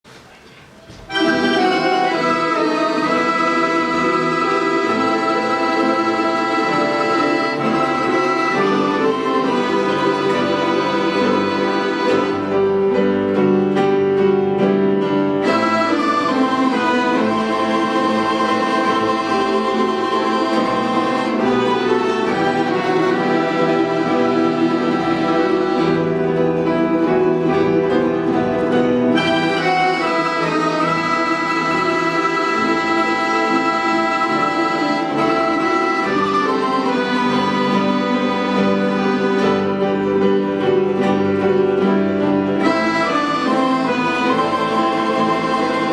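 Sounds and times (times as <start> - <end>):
folk instrument orchestra playing: 0.8 - 45.9.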